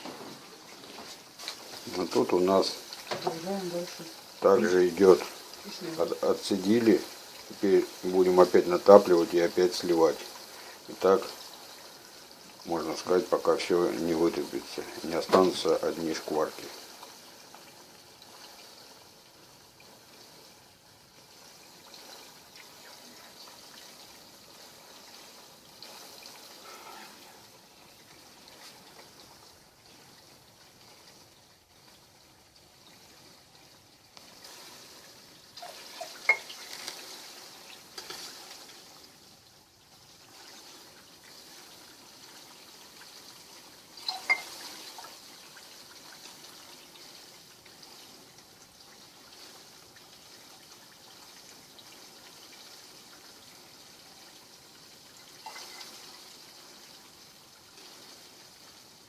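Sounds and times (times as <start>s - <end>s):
hot fat bubbling: 0.0s - 59.0s.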